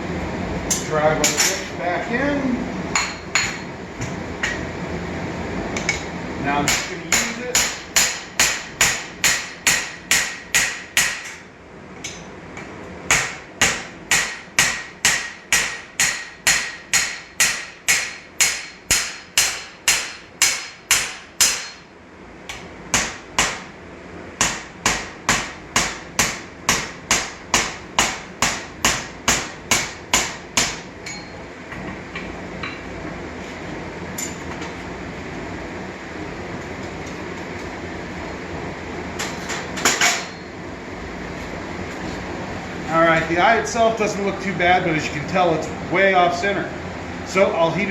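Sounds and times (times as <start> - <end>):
hammer striking steel: 5.8 - 11.4, 13.1 - 21.9, 22.5 - 23.7, 24.4 - 31.4, 39.2 - 40.5.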